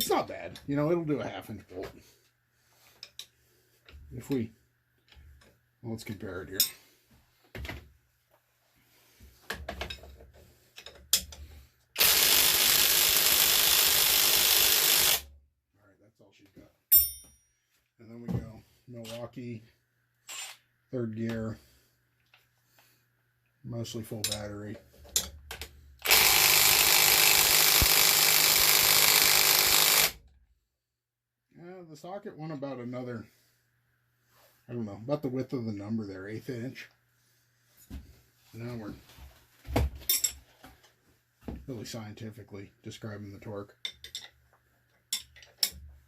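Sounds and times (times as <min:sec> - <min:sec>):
impact wrench hammering on bolt: 0:26.0 - 0:30.2.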